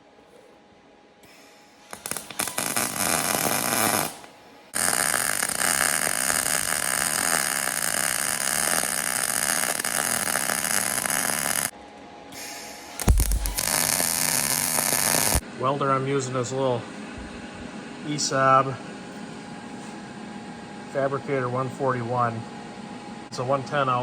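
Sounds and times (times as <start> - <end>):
welder frying crackle: 1.8 - 11.7, 12.8 - 15.4.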